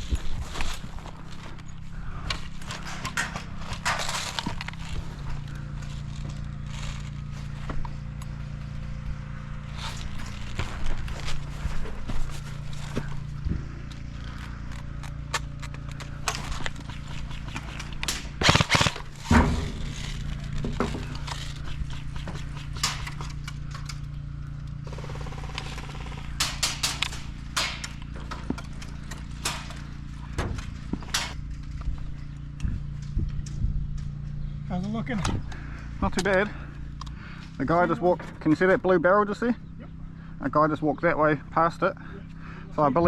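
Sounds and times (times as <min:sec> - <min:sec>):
footsteps crunching on rough ground: 0:00.0 - 0:24.8
low hum: 0:00.0 - 0:43.0.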